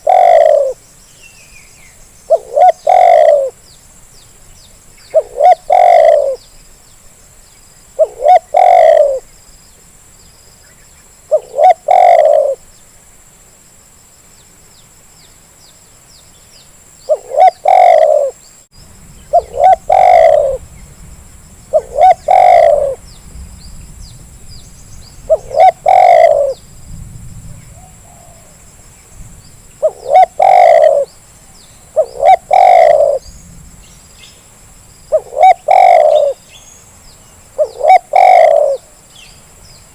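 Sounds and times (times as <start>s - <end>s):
dove cooing: 0.0s - 0.8s, 2.3s - 3.6s, 5.1s - 6.4s, 8.0s - 9.3s, 11.3s - 12.6s, 17.1s - 18.4s, 19.3s - 20.6s, 21.7s - 23.0s, 25.3s - 26.6s, 27.8s - 28.6s, 29.8s - 31.1s, 32.0s - 33.3s, 35.1s - 36.5s, 37.6s - 39.0s.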